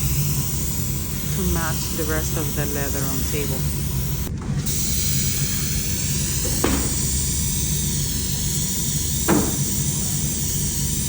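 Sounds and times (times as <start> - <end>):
low compressor hum: 0.0 - 11.0
airbrush spraying hiss: 4.7 - 11.0.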